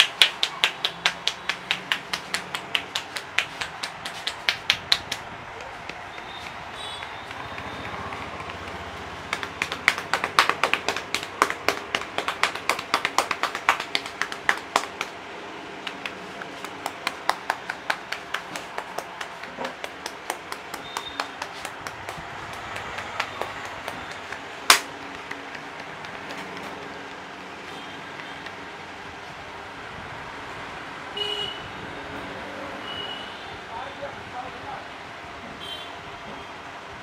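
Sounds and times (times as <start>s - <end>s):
hands tapping and slapping on head: 0.0s - 15.2s, 15.8s - 27.3s.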